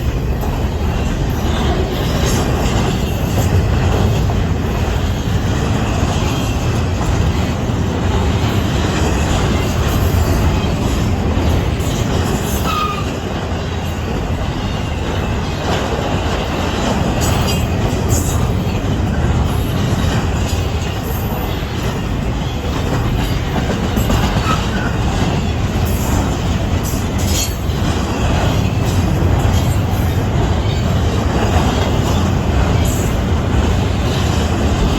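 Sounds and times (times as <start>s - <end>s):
train wheels rumbling on rail: 0.0s - 34.9s
wheel squeals: 12.4s - 13.8s, 23.2s - 26.2s.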